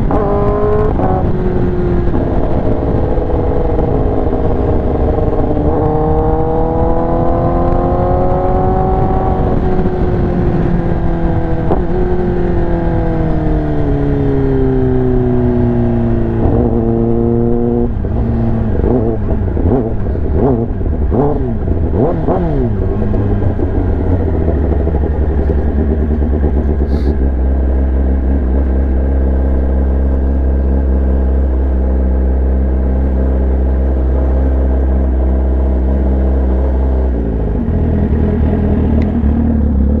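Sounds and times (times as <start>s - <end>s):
motorcycle engine revving: 0.0s - 40.0s
motorcycle engine idling: 22.8s - 32.7s.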